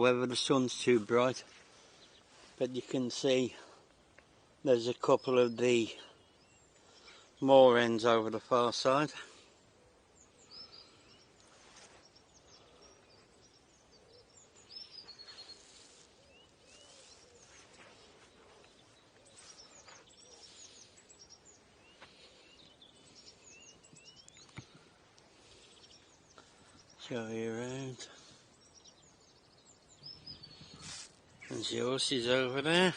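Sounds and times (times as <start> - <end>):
small birds chirping: 0.0 - 32.9.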